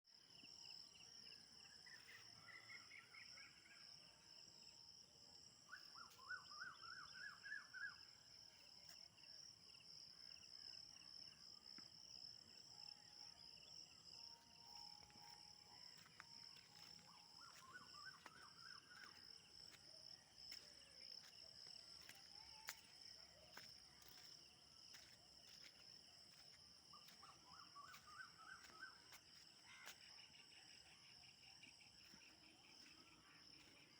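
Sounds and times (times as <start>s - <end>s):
high-pitched insect chorus: 12.2s - 33.9s.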